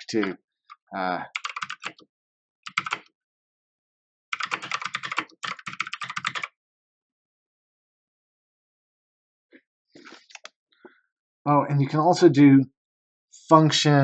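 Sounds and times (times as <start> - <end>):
mechanical keyboard typing: 1.4 - 2.0, 2.7 - 3.1, 4.4 - 6.5.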